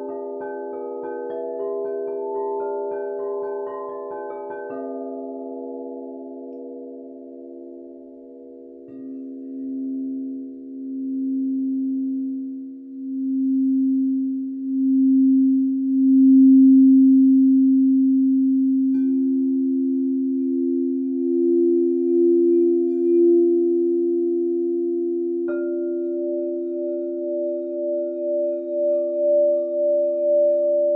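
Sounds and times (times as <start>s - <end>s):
higher-pitched singing bowl: 0.0s - 30.9s
singing bowl ringing: 0.0s - 30.9s.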